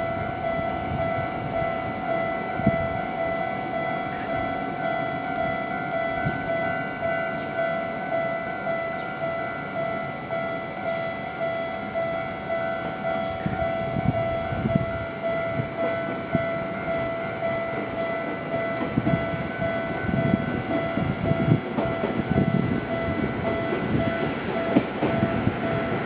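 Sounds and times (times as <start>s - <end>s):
level crossing two-tone alarm: 0.0s - 26.0s
train wheels knocking on rail joints: 12.8s - 26.0s.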